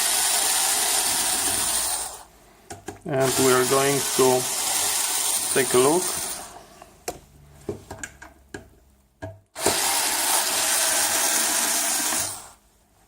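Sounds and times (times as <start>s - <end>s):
power screwdriver running: 0.0s - 2.2s, 3.2s - 6.5s, 9.6s - 12.6s.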